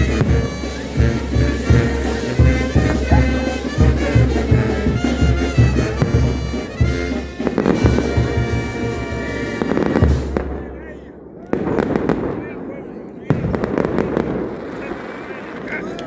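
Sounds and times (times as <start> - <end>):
bass drum beat: 0.0 - 10.6
wind instruments melody: 0.0 - 10.6.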